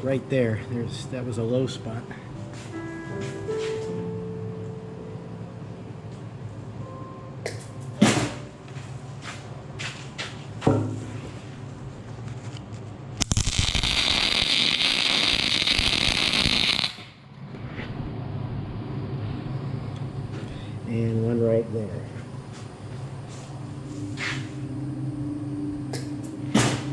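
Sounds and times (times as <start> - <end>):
welder arc buzzing: 13.2 - 17.4.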